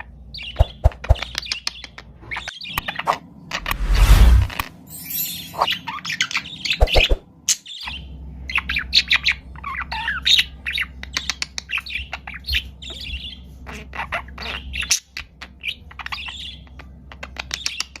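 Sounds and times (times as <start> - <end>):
budgerigars chattering: 5.6 - 18.0.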